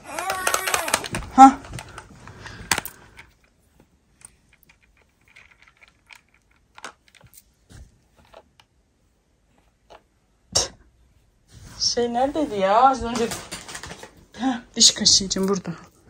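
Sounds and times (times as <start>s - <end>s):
small objects clicking and tapping: 0.0s - 3.5s, 4.2s - 7.5s.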